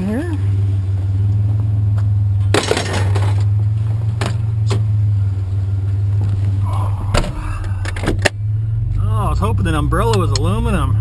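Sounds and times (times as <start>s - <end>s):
truck engine idling: 0.0s - 11.0s
metal clanks: 2.4s - 3.5s
scrap metal rattling: 2.5s - 3.5s.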